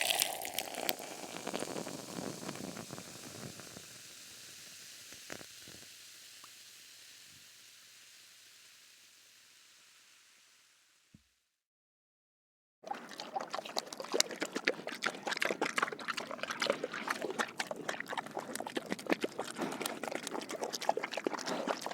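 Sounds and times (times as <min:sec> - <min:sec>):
animal lapping liquid: 0:00.0 - 0:03.5, 0:12.9 - 0:21.9.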